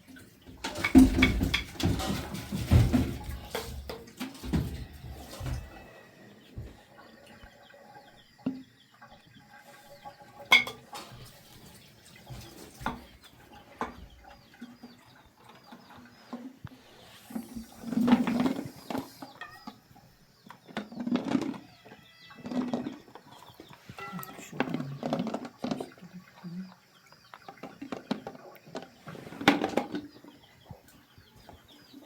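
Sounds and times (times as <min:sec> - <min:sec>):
chickens clucking: 0:00.0 - 0:32.0
knocks and clatter: 0:00.4 - 0:05.9.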